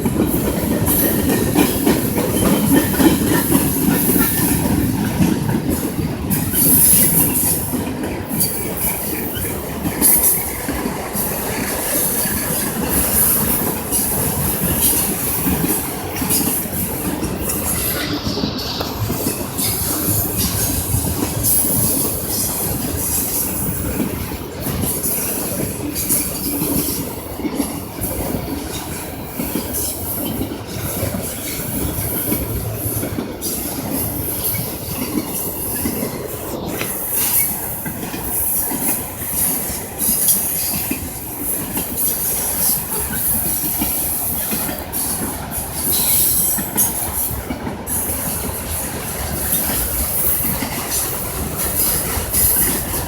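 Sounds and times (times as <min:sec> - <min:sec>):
train cars knocking and clanking: 0:00.0 - 0:53.0
train cars rolling on rails: 0:00.0 - 0:53.0.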